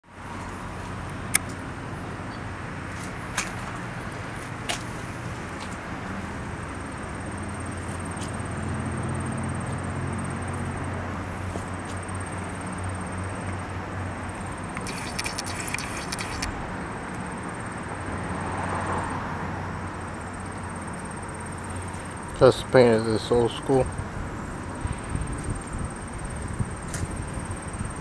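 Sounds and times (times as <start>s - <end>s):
outdoor background noise: 0.0s - 28.0s
sharp clicks: 14.8s - 16.5s.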